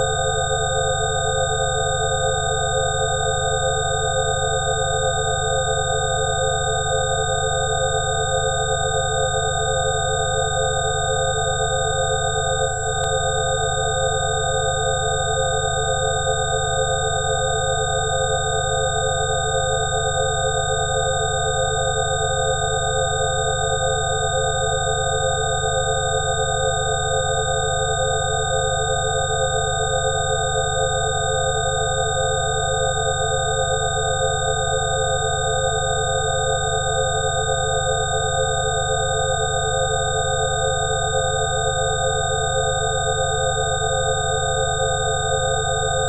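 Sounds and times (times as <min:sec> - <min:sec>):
electronic sine tone drone: 0:00.0 - 0:46.0.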